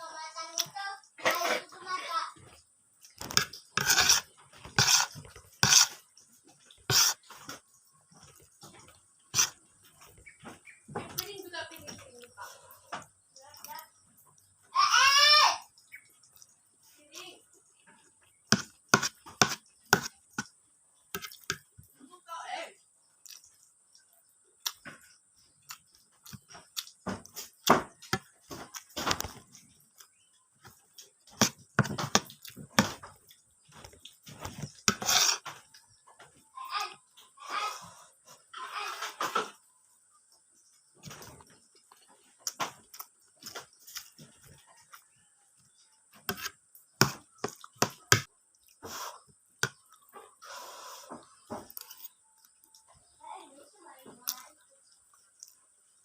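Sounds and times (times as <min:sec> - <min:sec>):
chewing and crunching: 0:02.4 - 0:14.6, 0:15.7 - 0:22.0, 0:22.9 - 0:37.4, 0:39.6 - 0:50.6, 0:51.2 - 0:53.2, 0:54.2 - 0:56.0
eating smacks and clicks: 0:23.2 - 0:28.1.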